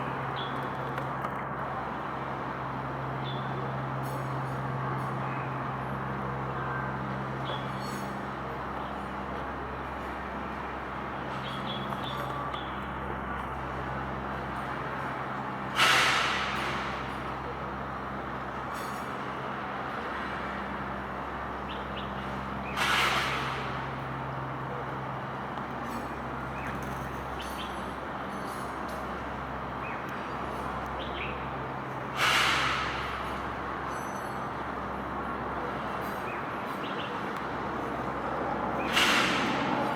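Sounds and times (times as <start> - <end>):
rushing background noise: 22.2 - 39.9.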